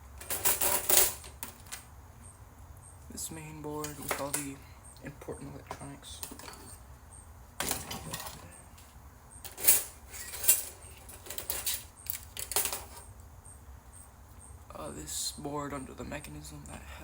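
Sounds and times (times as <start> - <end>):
plastic and metal parts clattering: 0.2 - 1.9, 3.8 - 4.6, 5.7 - 6.8, 7.6 - 13.1.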